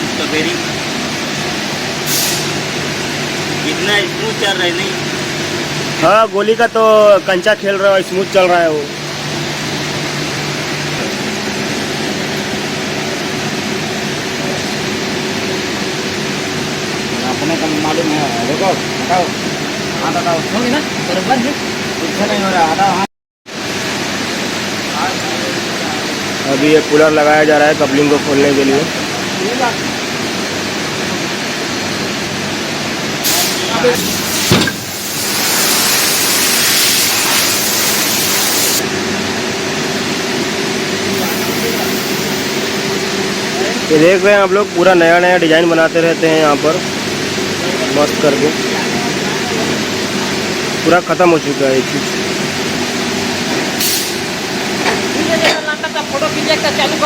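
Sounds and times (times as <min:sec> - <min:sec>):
loud steady hiss: 0:00.0 - 0:16.3, 0:32.8 - 0:39.1, 0:40.3 - 0:48.6, 0:49.2 - 0:57.0
sharp knock: 0:34.4 - 0:34.9.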